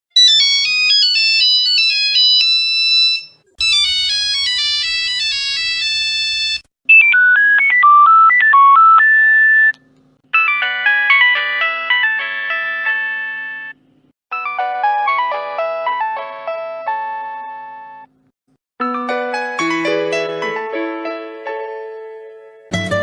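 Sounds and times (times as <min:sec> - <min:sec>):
mobile phone ringtones: 0:00.2 - 0:09.7, 0:10.3 - 0:15.6.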